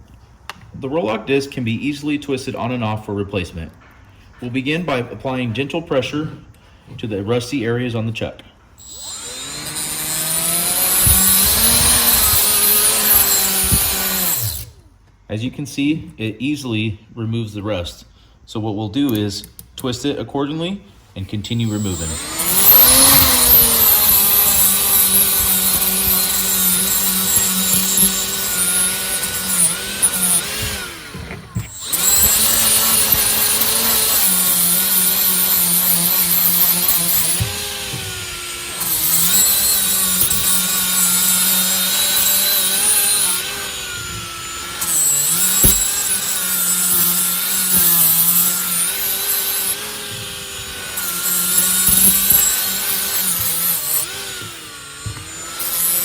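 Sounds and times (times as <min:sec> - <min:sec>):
die grinder motor whine: 0:08.8 - 0:14.8, 0:21.5 - 0:56.0
wire brush scrubbing metal: 0:21.5 - 0:56.0.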